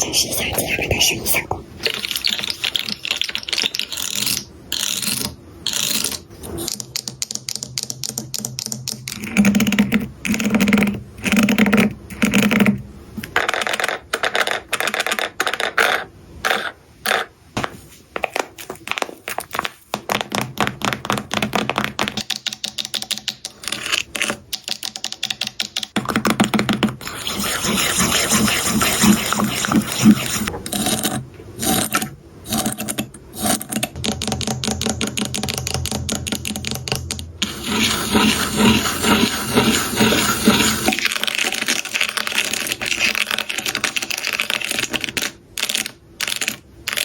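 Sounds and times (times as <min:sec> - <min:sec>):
fidget board clicking and tapping: 0:06.0 - 0:10.8, 0:19.9 - 0:27.0, 0:33.8 - 0:37.4.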